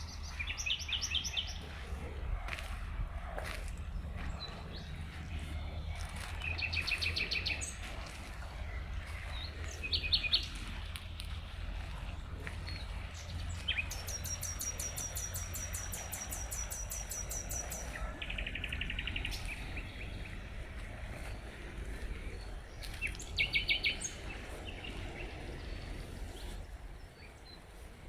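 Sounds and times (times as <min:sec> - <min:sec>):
songbirds trilling: 0:00.0 - 0:28.0
steady low rumble: 0:00.0 - 0:28.0.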